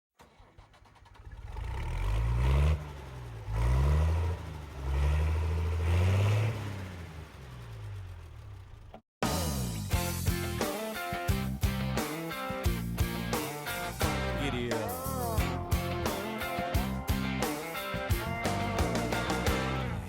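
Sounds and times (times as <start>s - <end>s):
engine revving: 0.3s - 9.0s.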